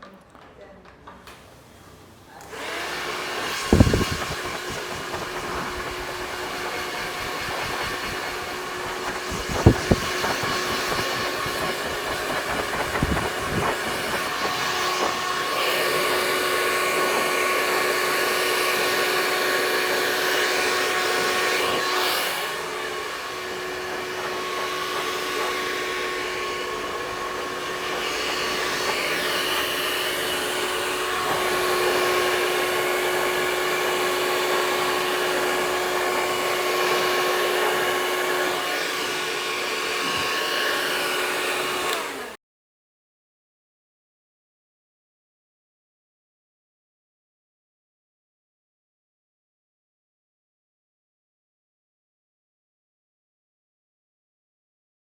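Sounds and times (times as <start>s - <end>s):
hair dryer running: 1.3s - 42.4s.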